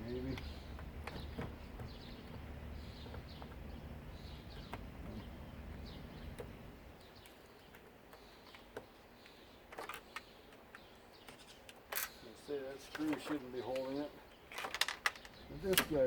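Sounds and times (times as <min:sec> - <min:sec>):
low machinery hum: 0:00.0 - 0:07.0
small bird chirping: 0:00.0 - 0:15.7.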